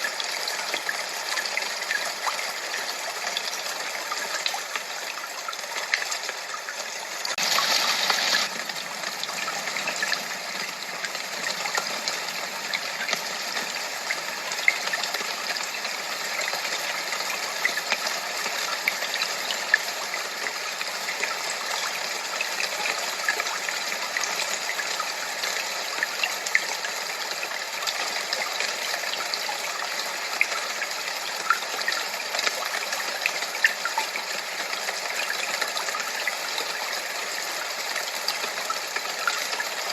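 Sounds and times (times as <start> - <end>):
rushing splashing water: 0.0 - 39.9.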